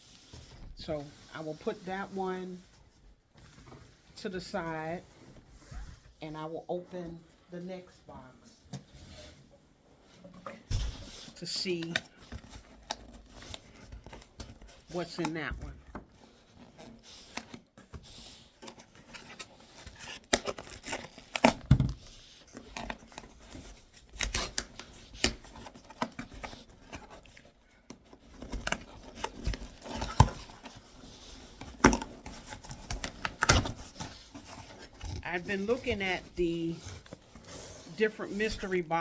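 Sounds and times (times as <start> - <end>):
cardboard tearing: 16.0 - 38.0
packaging crinkling: 19.0 - 21.7, 22.6 - 38.0.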